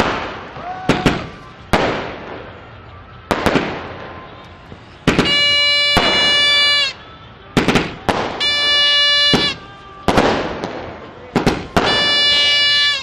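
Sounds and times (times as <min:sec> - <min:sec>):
firecrackers banging: 0:00.0 - 0:13.0
steady shrill tone: 0:05.2 - 0:07.0, 0:08.4 - 0:09.8.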